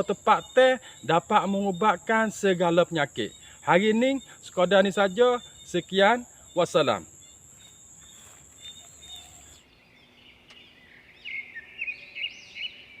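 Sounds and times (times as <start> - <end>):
high insect trill: 0.0 - 9.7
bird chirping: 0.0 - 13.0.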